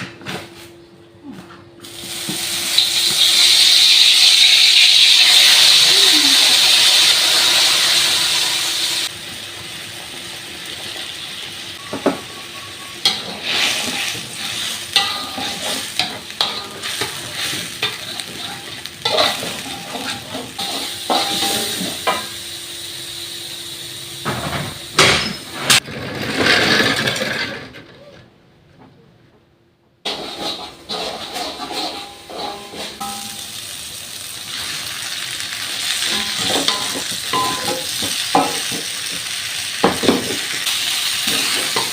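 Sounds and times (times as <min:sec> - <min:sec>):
food sizzling in hot oil: 0:01.9 - 0:24.2, 0:30.1 - 0:41.9
spatula scraping a pan: 0:11.9 - 0:22.2, 0:30.1 - 0:33.4, 0:40.6 - 0:41.9.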